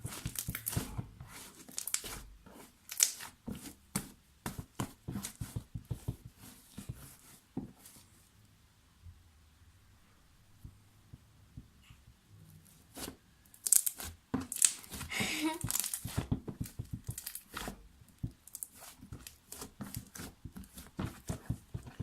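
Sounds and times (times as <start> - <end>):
slime sticky clicks and crackles: 1.7 - 2.1, 2.9 - 3.2, 13.5 - 15.0, 15.7 - 16.1.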